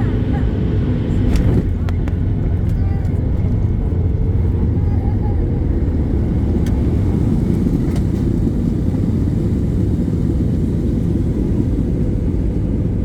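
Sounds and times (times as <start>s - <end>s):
airliner cabin rumble: 0.0s - 13.0s.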